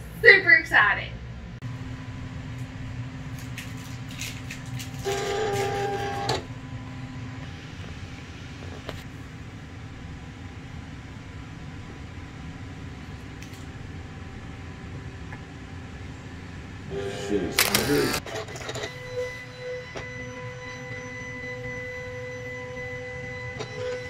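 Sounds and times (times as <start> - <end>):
low hum: 1.1 - 24.0
cutting machine motor whine: 5.0 - 9.0, 16.8 - 24.0.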